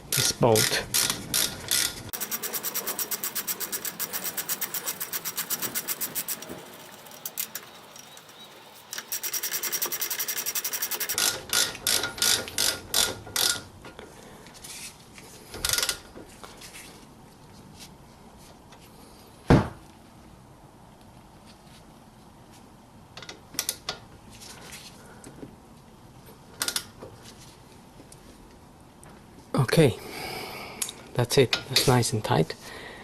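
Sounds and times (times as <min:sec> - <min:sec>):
ratchet wrench clicking: 0:00.1 - 0:13.6.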